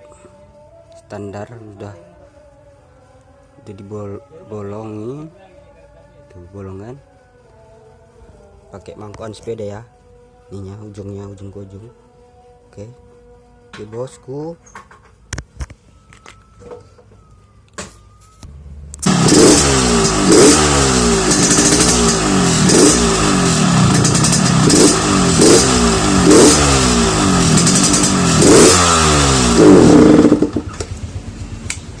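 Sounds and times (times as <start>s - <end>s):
motorcycle engine revving: 18.5s - 32.0s.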